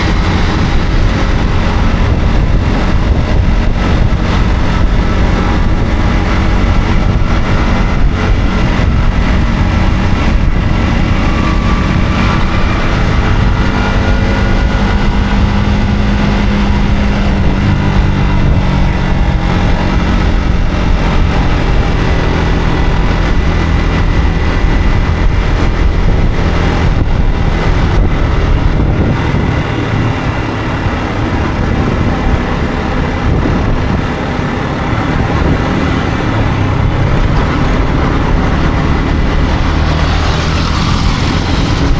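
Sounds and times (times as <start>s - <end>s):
motorcycle engine revving: 0.0s - 41.9s
road noise: 0.0s - 41.9s.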